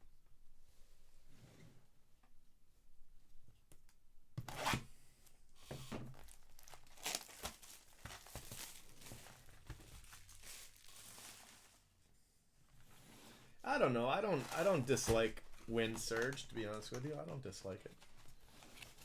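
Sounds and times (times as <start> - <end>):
card packs being torn open: 6.1 - 11.8, 14.3 - 19.0
wrapper crinkling: 6.1 - 11.9, 14.2 - 19.0.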